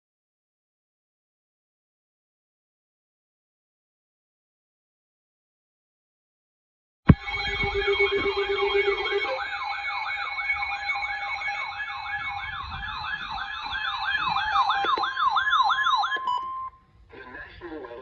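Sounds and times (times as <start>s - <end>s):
electronic siren yelping: 7.1s - 16.7s
steady electronic tones: 7.1s - 16.8s.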